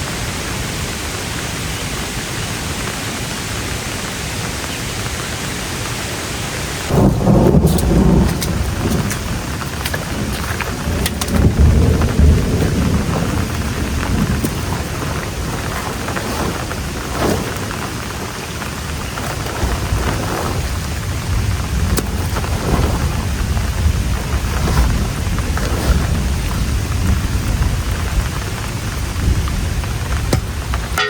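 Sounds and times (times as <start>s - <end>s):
heavy rain pouring: 0.0s - 31.0s
rain drops ticking: 0.0s - 31.0s
deep rumbling: 6.9s - 31.0s.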